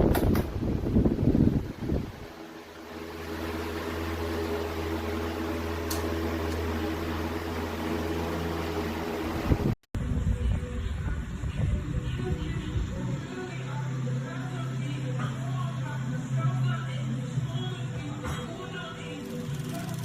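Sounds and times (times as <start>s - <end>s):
electric fan motor hum: 0.0s - 20.0s.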